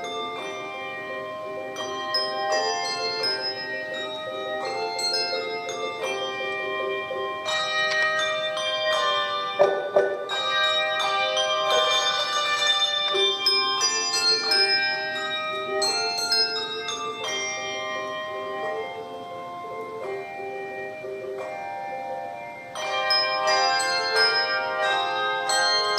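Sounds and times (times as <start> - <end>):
handbell choir playing chords: 0.0 - 25.9
sharp handbell strikes: 1.8 - 15.7.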